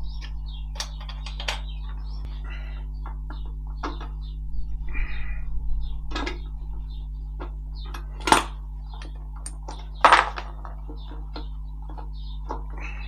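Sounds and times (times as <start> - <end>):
steady low hum: 0.0 - 13.0
loud metal clanks: 8.0 - 8.6
metal tools clinking: 8.0 - 10.8.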